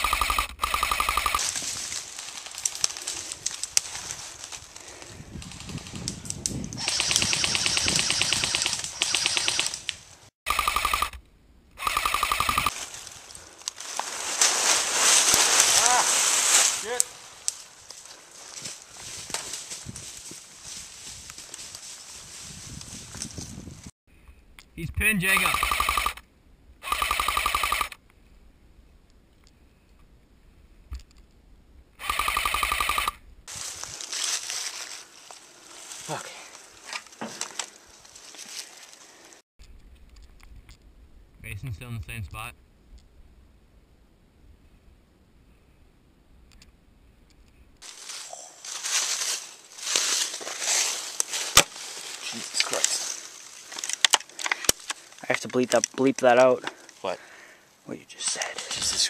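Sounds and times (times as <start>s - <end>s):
airsoft rifle rapid fire: 0.0s - 1.4s, 6.8s - 9.7s, 10.5s - 11.2s, 11.8s - 12.7s, 25.3s - 26.2s, 26.8s - 28.0s, 32.0s - 33.2s
rustling: 0.9s - 7.1s, 11.8s - 23.9s, 32.0s - 40.8s, 47.4s - 55.9s
airsoft rifle firing full-auto: 11.8s - 12.7s.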